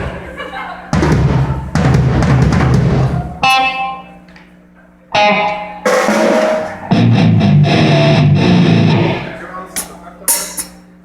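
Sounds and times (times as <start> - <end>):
drum kit played loudly: 0.9 - 3.8, 5.8 - 9.2, 9.8 - 10.8.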